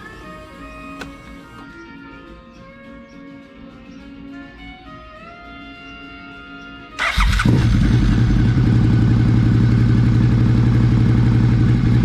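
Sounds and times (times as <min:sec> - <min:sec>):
engine cranking: 0:00.0 - 0:01.6, 0:07.0 - 0:08.5
motorcycle engine idling: 0:07.0 - 0:12.0.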